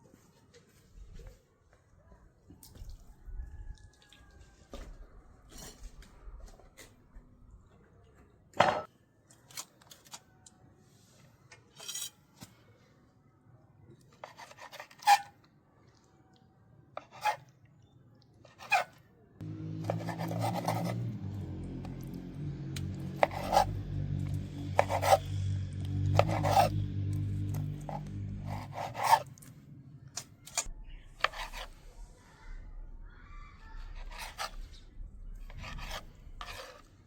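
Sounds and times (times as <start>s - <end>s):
rasping scraping strokes: 18.6s - 29.6s, 30.5s - 32.1s, 33.7s - 37.0s
steady low hum: 19.4s - 30.1s.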